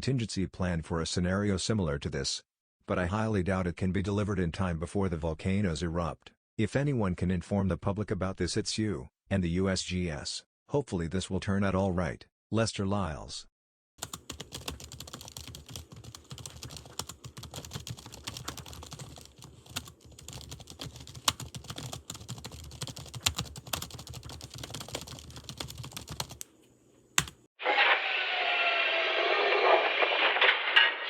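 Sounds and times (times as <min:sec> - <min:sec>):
typing on computer keyboard: 0:14.0 - 0:26.5, 0:27.2 - 0:27.4.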